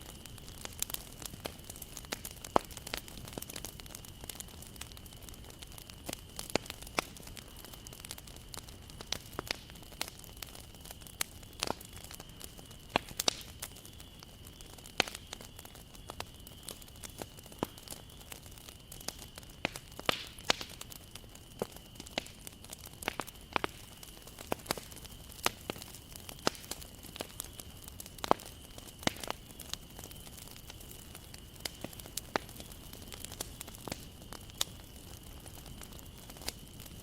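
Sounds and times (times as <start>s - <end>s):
campfire crackling and popping: 0.0s - 37.0s.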